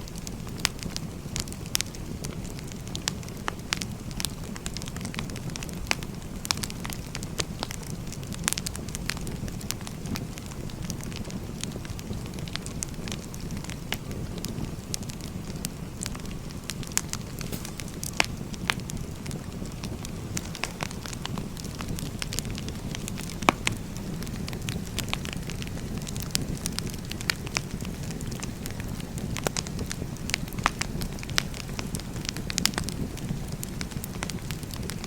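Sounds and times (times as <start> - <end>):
firewood crackling and popping: 0.0 - 35.0
fire low rush: 16.0 - 25.1.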